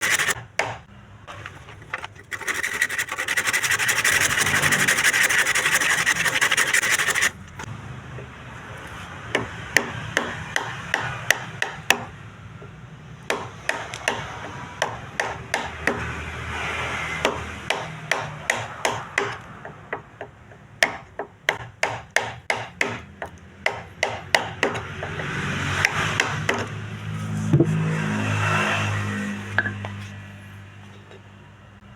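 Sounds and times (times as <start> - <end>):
loud steady power tool: 0.0 - 0.4, 2.2 - 7.4
rubbing and scraping: 0.0 - 0.4, 1.6 - 7.4
sharp knocks and taps on wood: 17.3 - 26.7.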